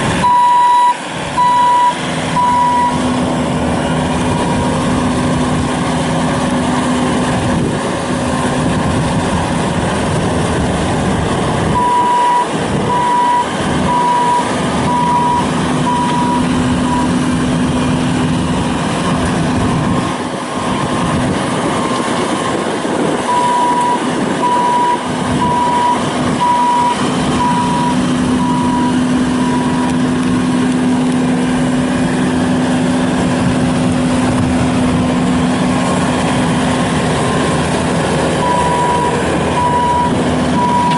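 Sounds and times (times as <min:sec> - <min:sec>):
diesel engine running: 0:00.0 - 0:40.9
backup alarm beeping: 0:00.2 - 0:03.0, 0:11.8 - 0:17.1, 0:23.3 - 0:30.0, 0:38.4 - 0:40.9.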